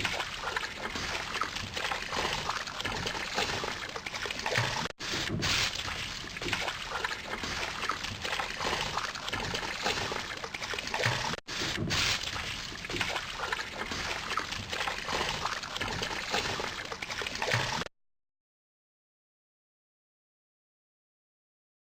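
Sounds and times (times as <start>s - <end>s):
water splashing from swimming strokes: 0.0s - 17.9s.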